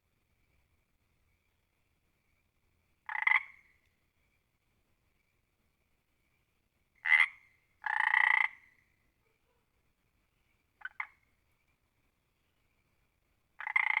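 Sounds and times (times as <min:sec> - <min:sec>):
frog croaking: 0:03.1 - 0:03.7, 0:07.0 - 0:08.8, 0:10.8 - 0:11.2, 0:13.6 - 0:14.0.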